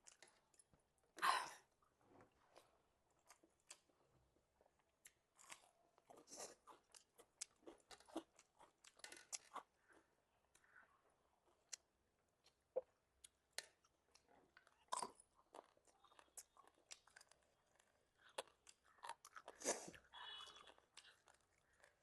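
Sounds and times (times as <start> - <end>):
crunching and chewing: 5.0 - 10.7, 13.2 - 22.0.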